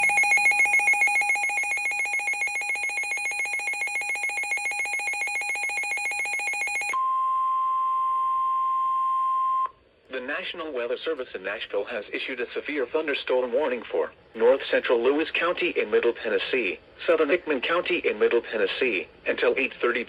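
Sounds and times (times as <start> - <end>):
rapid alarm beeps: 0.0 - 7.0
steady warning alert tone: 0.0 - 7.0.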